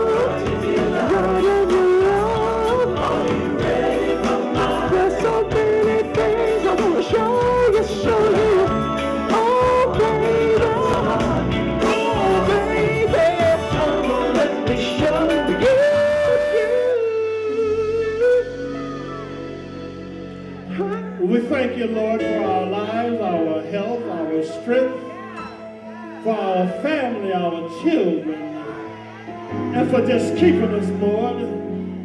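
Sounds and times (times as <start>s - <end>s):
funk band playing: 0.0s - 23.8s
person singing: 0.0s - 26.7s.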